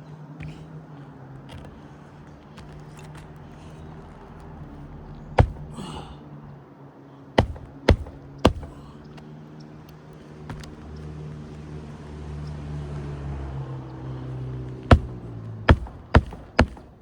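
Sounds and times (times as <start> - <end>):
hammer blows on shingle roof: 0.4 - 0.6, 5.4 - 6.2, 7.4 - 9.2, 10.5 - 10.8, 14.8 - 17.0
steady low hum: 4.6 - 6.2, 7.4 - 9.2.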